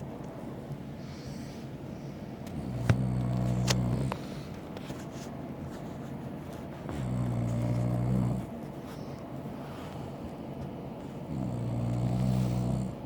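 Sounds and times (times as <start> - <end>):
man snoring: 11.3 - 13.0.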